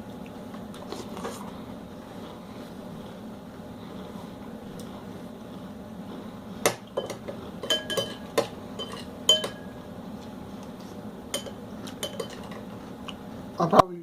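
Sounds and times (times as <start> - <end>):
spoons clinking against bowls: 7.0 - 9.8, 11.3 - 12.7.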